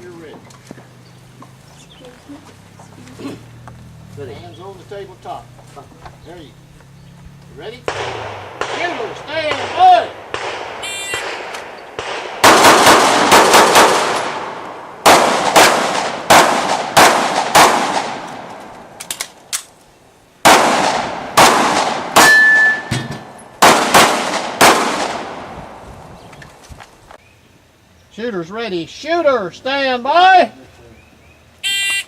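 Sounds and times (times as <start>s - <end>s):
pistol shots: 7.8s - 18.6s, 20.4s - 25.5s
short ringing tone: 10.8s - 11.2s, 22.3s - 22.9s, 31.6s - 32.0s
shot timer beep: 10.8s - 11.2s.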